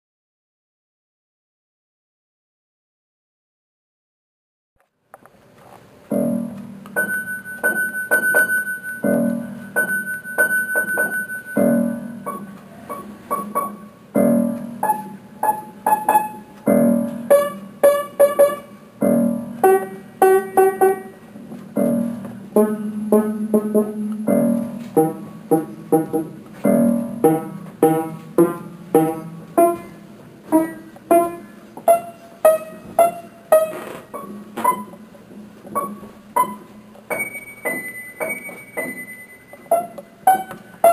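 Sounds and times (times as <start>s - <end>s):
piano music: 6.1s - 40.9s.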